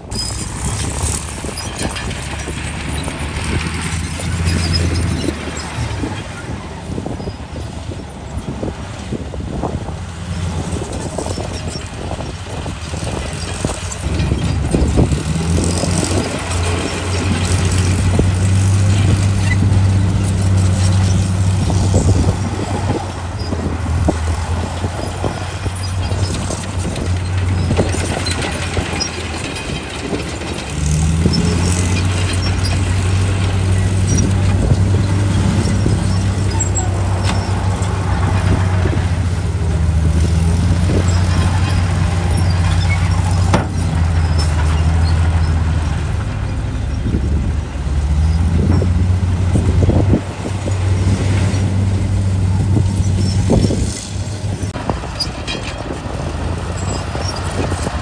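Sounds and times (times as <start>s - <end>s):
heavy diesel engine droning: 0.0s - 58.0s
metallic clanks: 9.9s - 47.2s.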